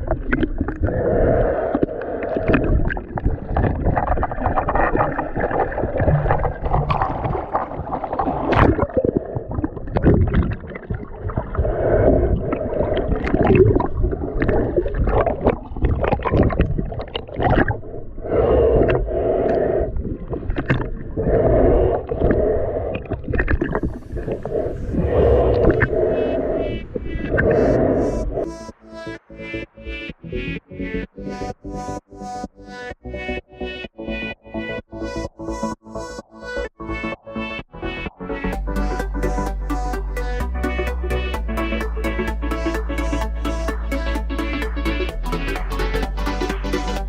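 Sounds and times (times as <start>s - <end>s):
muffled water sloshing underwater: 0.0s - 28.6s
knocks and splashes: 2.4s - 9.0s, 13.2s - 17.8s.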